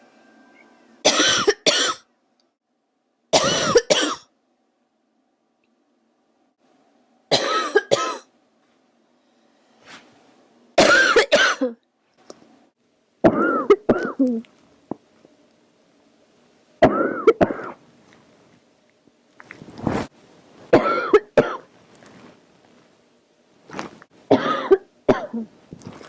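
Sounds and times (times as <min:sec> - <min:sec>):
girl coughing: 0:01.0 - 0:02.0, 0:03.4 - 0:04.3, 0:07.3 - 0:08.3, 0:10.8 - 0:11.8, 0:13.3 - 0:14.4, 0:20.8 - 0:21.7, 0:24.3 - 0:25.5.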